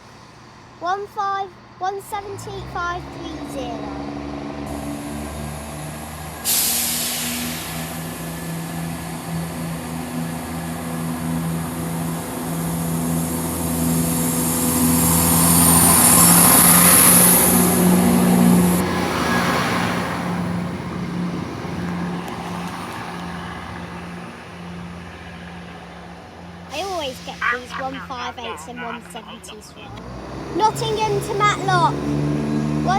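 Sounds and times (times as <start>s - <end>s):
train diesel engine droning: 0.0s - 32.9s
air brakes hissing: 4.6s - 20.5s.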